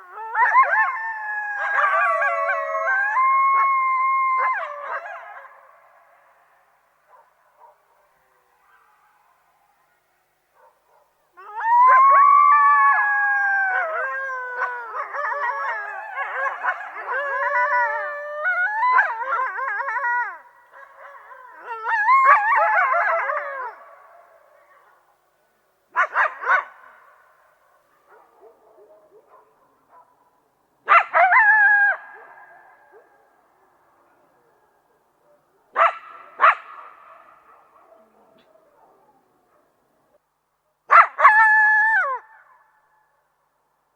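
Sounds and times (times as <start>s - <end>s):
coyotes howling: 0.0s - 6.3s, 11.4s - 24.5s.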